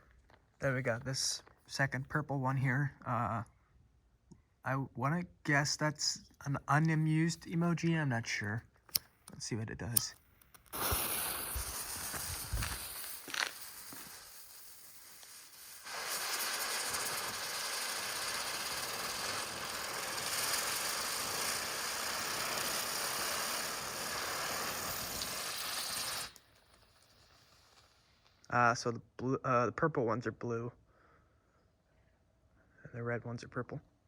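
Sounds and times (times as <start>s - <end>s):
firework spinner hissing: 10.7s - 28.3s.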